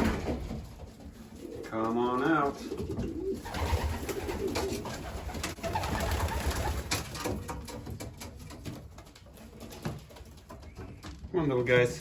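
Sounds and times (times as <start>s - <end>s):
pigeons cooing: 0.8s - 7.0s.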